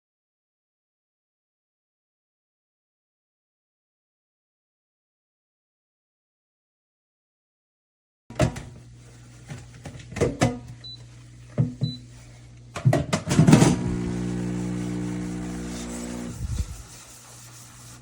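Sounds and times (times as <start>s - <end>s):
pump buzzing hum: 8.3s - 16.8s.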